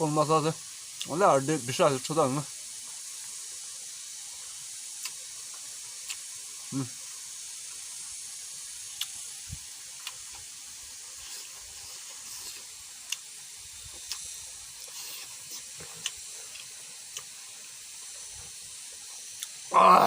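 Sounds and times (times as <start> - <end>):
faint hiss: 0.0 - 20.0
mouth clicks and chewing: 5.0 - 6.3, 8.9 - 9.3, 10.0 - 10.5, 11.2 - 17.4, 19.2 - 19.6.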